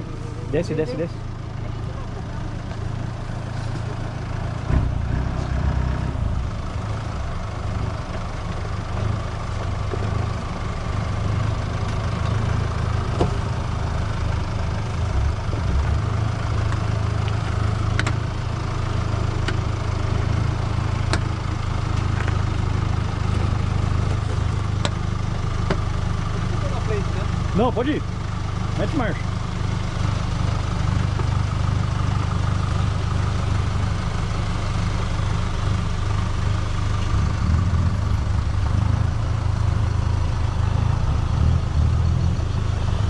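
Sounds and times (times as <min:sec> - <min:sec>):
diesel engine running at low revs: 0:00.0 - 0:43.0
sharp clicks and knocks: 0:17.9 - 0:18.2.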